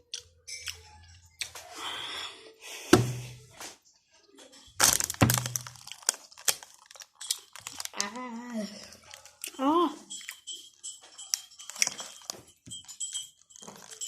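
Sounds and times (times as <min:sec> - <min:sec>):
dull thud: 0:02.9 - 0:03.4, 0:05.2 - 0:05.7.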